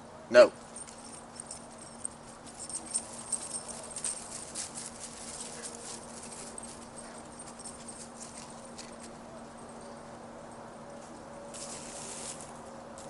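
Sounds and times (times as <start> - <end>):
footsteps in dry leaf litter: 3.3 - 7.0, 11.5 - 12.6.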